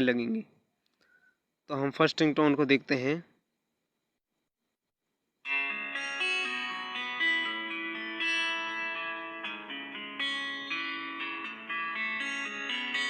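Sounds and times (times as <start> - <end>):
plucked-string ringtone melody: 5.5 - 13.0.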